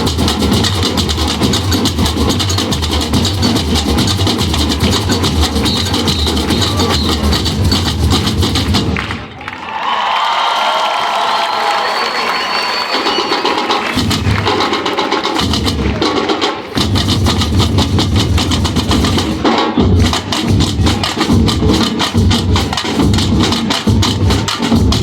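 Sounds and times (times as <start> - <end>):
deep bass drum beats: 0.0 - 9.0, 16.8 - 25.0
drum ensemble playing fast rhythm: 0.0 - 9.4, 11.7 - 25.0.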